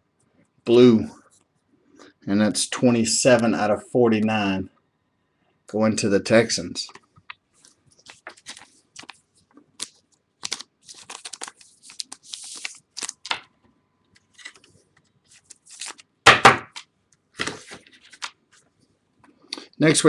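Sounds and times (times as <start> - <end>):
packaging rustling and crinkling: 7.6 - 13.5, 14.2 - 16.1, 17.4 - 18.7
packaging tearing: 9.8 - 13.5, 15.3 - 16.1.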